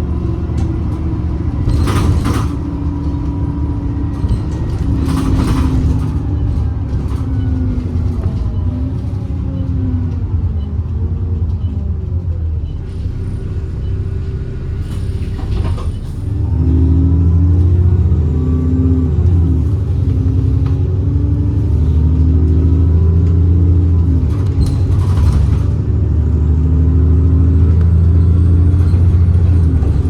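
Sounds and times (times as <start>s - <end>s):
bus diesel engine running: 0.0s - 30.0s.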